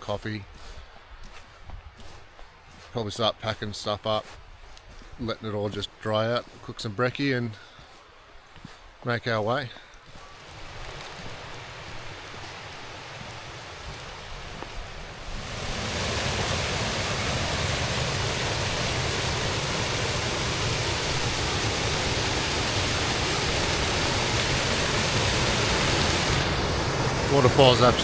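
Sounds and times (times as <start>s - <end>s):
waterfall rushing: 10.4s - 28.0s.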